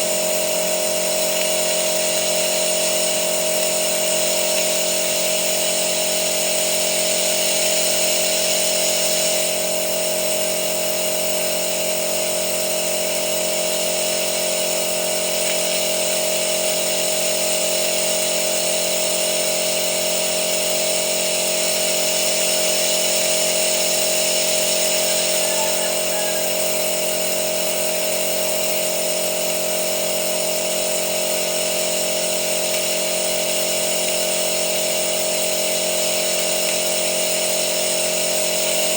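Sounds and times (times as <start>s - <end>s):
steady mechanical whine: 20.7s - 28.5s.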